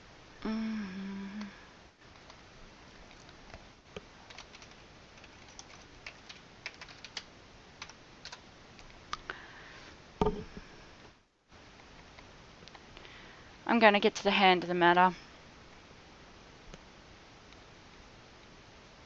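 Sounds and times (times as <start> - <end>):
keyboard keys clicking: 4.3 - 7.2
knock against desk: 10.2 - 10.5.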